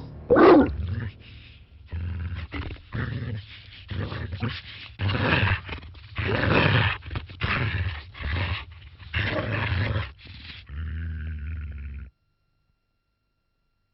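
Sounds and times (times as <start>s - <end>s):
harsh bark-like animal calls: 0.3s - 1.2s.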